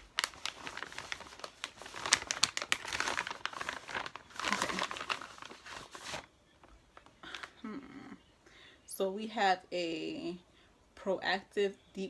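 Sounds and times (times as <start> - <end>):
packaging crinkling and rustling: 0.0 - 7.6.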